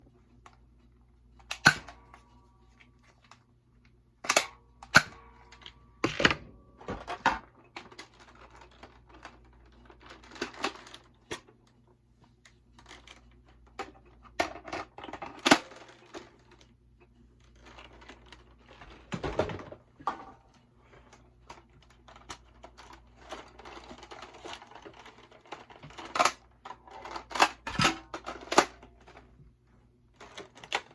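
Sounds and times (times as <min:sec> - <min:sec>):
rustling and handling: 0:00.0 - 0:30.9.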